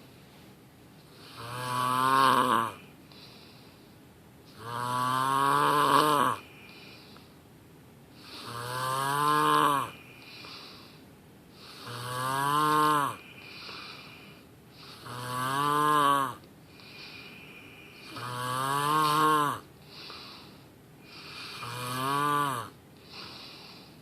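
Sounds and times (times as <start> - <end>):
quiet breaths: 0.0 - 24.0
person snoring loudly: 1.2 - 2.8, 4.5 - 6.5, 8.2 - 10.6, 11.6 - 14.1, 14.8 - 17.2, 18.0 - 20.4, 21.1 - 23.8.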